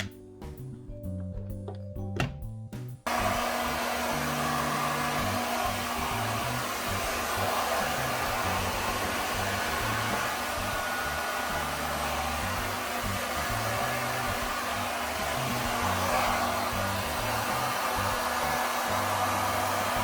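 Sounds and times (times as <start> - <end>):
background music: 0.0 - 20.0
hair dryer blowing air: 3.1 - 20.0.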